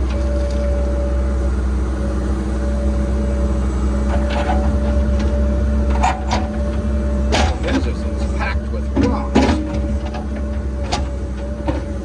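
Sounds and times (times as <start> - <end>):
excavator diesel engine whine: 0.0 - 12.0
excavator bucket clanks: 4.0 - 12.0.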